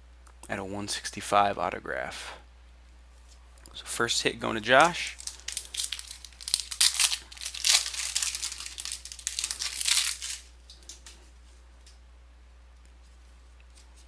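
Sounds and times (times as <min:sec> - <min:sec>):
wrapper tearing and crinkling: 0:04.8 - 0:11.2.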